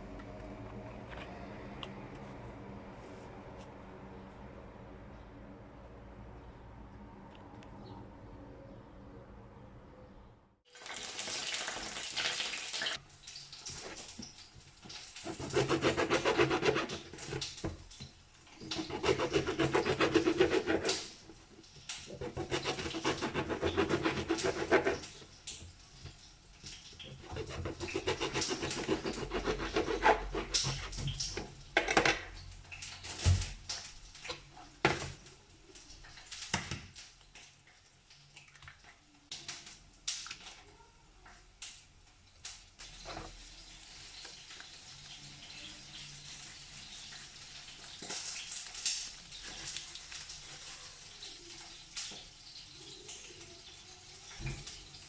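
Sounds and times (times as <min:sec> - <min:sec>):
utensil scraping in a bowl: 0:15.2 - 0:17.6, 0:18.6 - 0:21.4, 0:22.1 - 0:25.3, 0:27.1 - 0:31.4.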